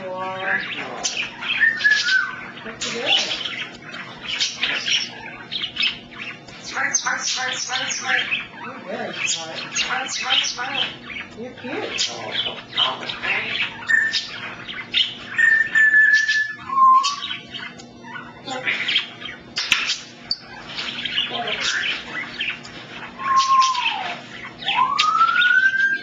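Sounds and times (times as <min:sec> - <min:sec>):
parrot whistling: 0:01.2 - 0:02.6, 0:12.1 - 0:20.7, 0:21.5 - 0:26.0
parrot clicks and chirps: 0:17.0 - 0:18.0, 0:19.4 - 0:25.5.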